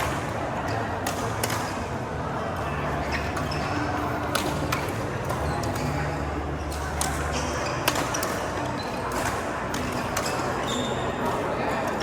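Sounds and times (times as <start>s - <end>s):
racket hitting shuttlecock: 1.0s - 1.7s, 4.3s - 5.9s.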